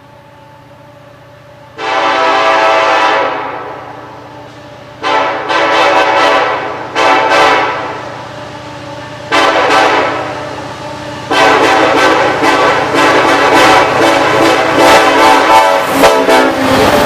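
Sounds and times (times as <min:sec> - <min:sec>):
locomotive air horn blasts: 0:01.8 - 0:03.9, 0:05.0 - 0:08.0, 0:09.3 - 0:10.4, 0:11.3 - 0:17.0.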